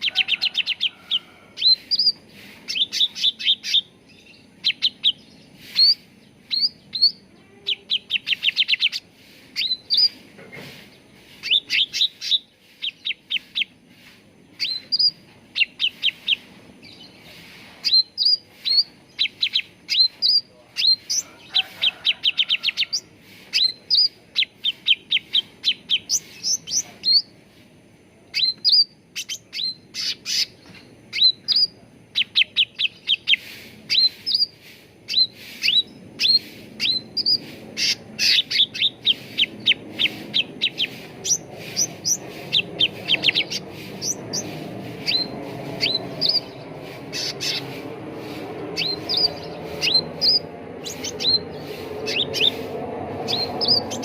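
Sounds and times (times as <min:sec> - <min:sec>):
songbird singing rapid chirps: 0:00.0 - 0:54.0.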